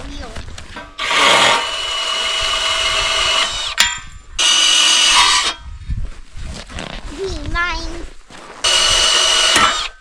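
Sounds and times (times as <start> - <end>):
power drill whining: 1.0 - 3.8, 4.4 - 5.6, 8.6 - 10.0.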